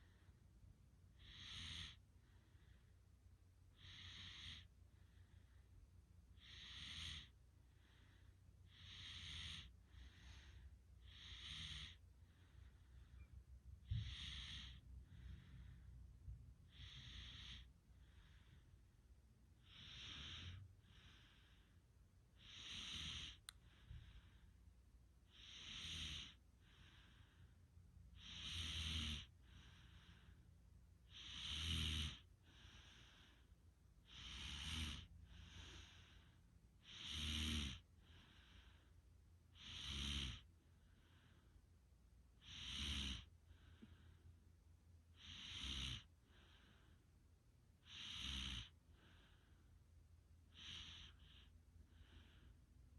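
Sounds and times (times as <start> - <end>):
person snoring: 1.2 - 2.0, 8.7 - 12.0, 13.8 - 15.4, 16.7 - 17.7, 22.4 - 23.5, 25.3 - 27.2, 28.2 - 30.3, 31.1 - 33.4, 34.1 - 36.2, 36.8 - 37.8, 39.6 - 40.5, 42.4 - 44.0, 45.2 - 46.1, 47.8 - 48.7.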